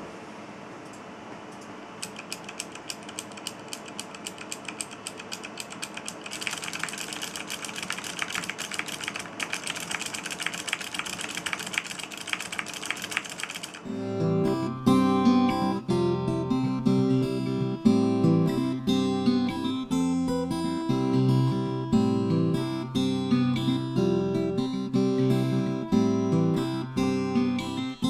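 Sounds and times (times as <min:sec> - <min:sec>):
computer switches clicking: 0:02.0 - 0:13.9
acoustic guitar music: 0:13.8 - 0:28.0.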